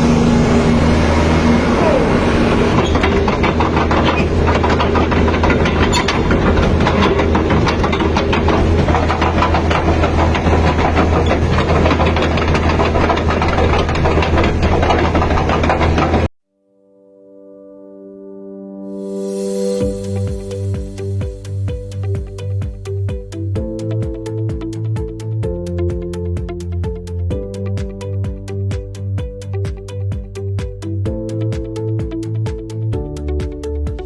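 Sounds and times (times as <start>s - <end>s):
excavator diesel engine running: 0.0s - 16.3s
rapid metallic clatter: 2.7s - 16.3s.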